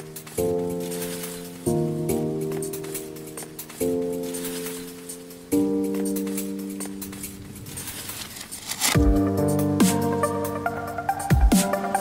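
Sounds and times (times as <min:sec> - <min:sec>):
dubstep electronic dance music: 0:08.6 - 0:10.0.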